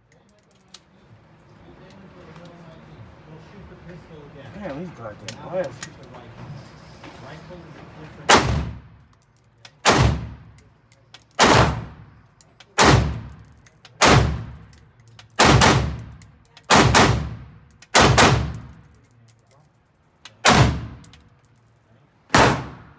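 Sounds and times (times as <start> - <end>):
rifle shots: 9.8 - 10.4, 11.4 - 11.9, 12.8 - 13.3, 14.0 - 14.6, 15.4 - 16.0, 16.7 - 18.6, 20.4 - 21.0, 22.3 - 22.8.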